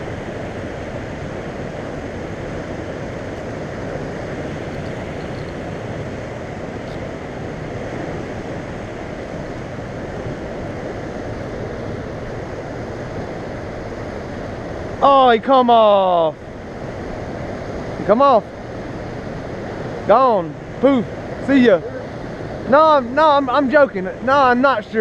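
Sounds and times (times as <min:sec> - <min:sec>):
wind buffeting microphone: 0:00.0 - 0:15.0
churning water rushing: 0:00.0 - 0:25.0.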